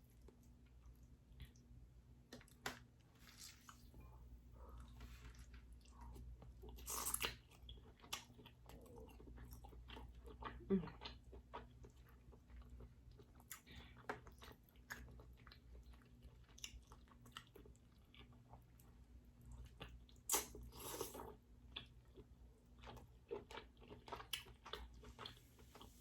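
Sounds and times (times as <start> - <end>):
soft chewing: 0.0 - 26.0.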